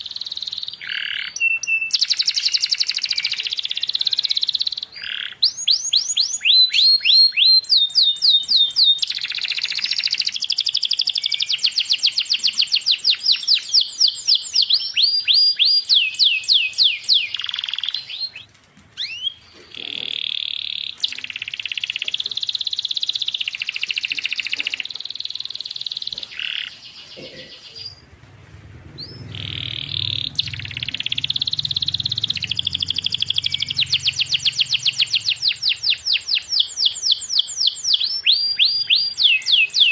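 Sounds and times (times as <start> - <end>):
canary singing trills: 0.0 - 39.9
low hum: 27.8 - 35.5.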